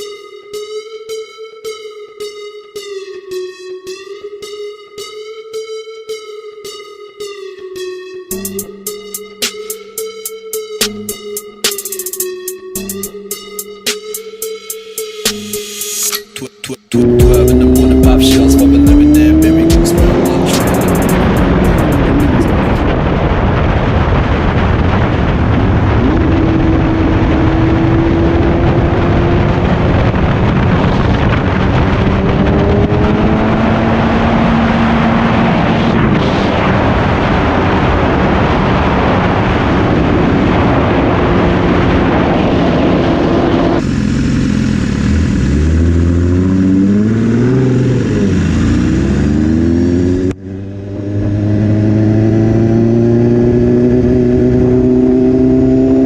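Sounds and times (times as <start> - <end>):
motorcycle engine revving: 17.0 - 22.9, 25.8 - 37.7, 42.9 - 56.0
wind noise: 21.1 - 43.8.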